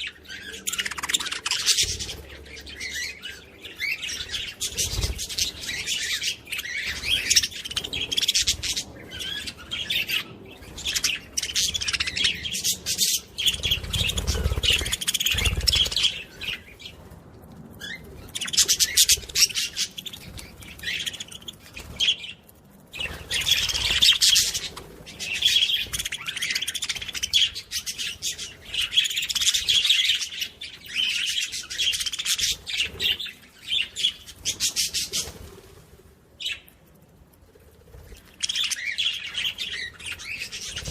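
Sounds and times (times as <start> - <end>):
small birds chirping and twittering: 0.0 - 40.9.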